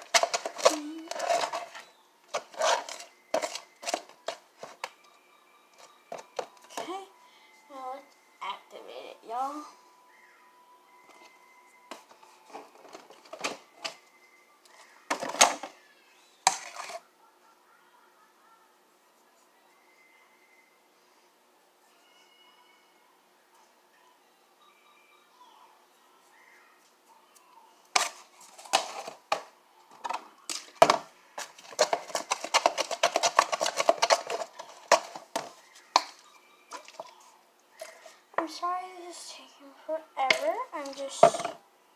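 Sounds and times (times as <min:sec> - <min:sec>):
fast stirring clicks: 0:31.4 - 0:37.1.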